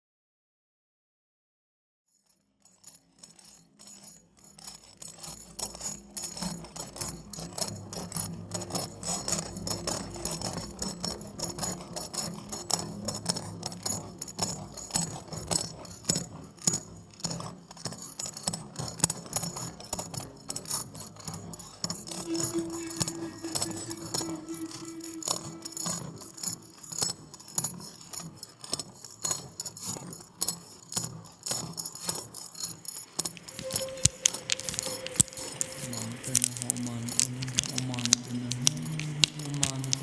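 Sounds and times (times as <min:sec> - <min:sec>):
low sustained drone: 0:22.1 - 0:27.6, 0:33.2 - 0:40.0
jingling rattling percussion: 0:32.8 - 0:40.0.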